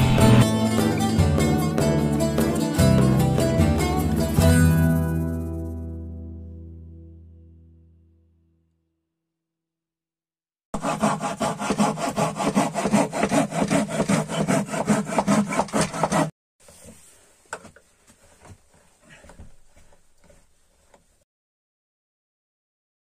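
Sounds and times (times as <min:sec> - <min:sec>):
rapid rasping strokes: 0:10.8 - 0:21.2.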